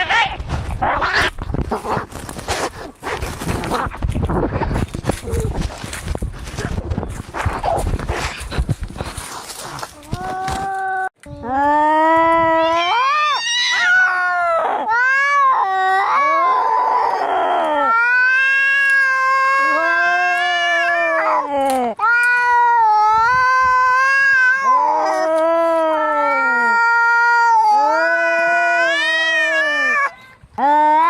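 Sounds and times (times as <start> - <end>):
cats yowling: 12.5 - 30.2.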